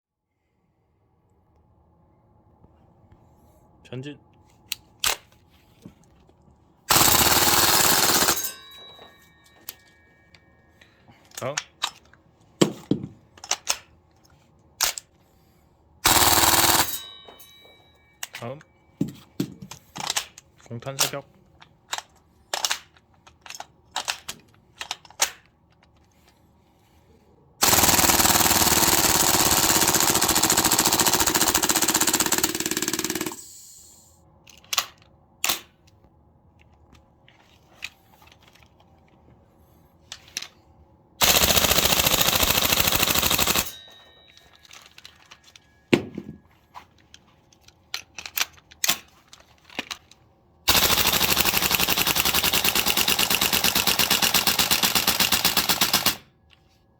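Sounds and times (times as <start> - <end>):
airsoft guns firing full auto: 6.9 - 9.0, 16.0 - 17.2, 27.6 - 33.6, 41.2 - 43.8, 50.7 - 56.3
mechanical clicks of handling: 13.3 - 15.2, 19.7 - 26.2, 46.8 - 50.2.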